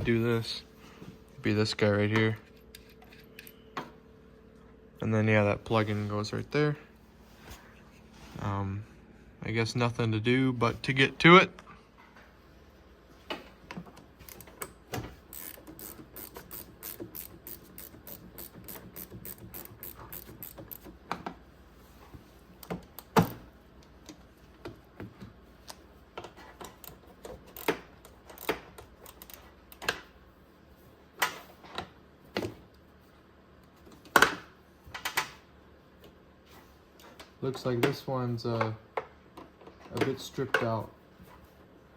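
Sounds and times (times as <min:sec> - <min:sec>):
socket ratchet clicking: 0:15.3 - 0:20.9.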